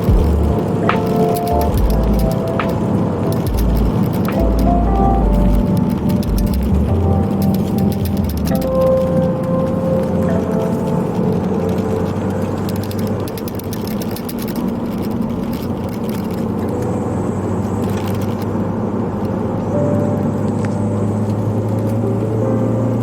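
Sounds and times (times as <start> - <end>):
car engine running: 0.0 - 9.3
road noise: 0.0 - 23.0
metallic rattling of clips: 12.4 - 16.6.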